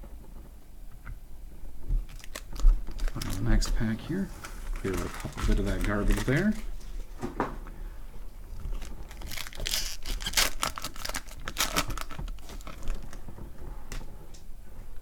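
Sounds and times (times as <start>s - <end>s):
card pack wrappers crinkling: 2.1s - 6.8s, 8.6s - 13.2s.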